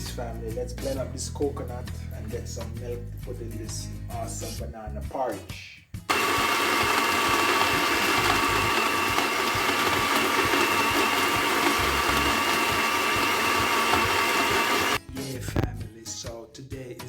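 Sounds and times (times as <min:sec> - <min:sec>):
blender motor whining: 0:06.1 - 0:15.0
contents churning in blender: 0:06.1 - 0:15.0.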